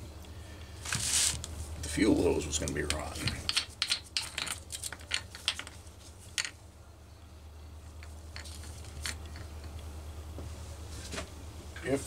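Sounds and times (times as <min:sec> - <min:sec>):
steady low hum: 0:00.0 - 0:12.0
handling clicks and taps: 0:02.6 - 0:05.8.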